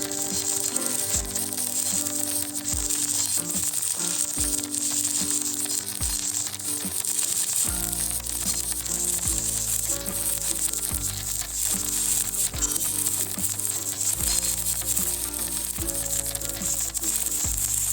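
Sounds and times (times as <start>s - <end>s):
welding arc crackle: 0.0s - 17.9s
music with bass drops: 7.5s - 17.9s.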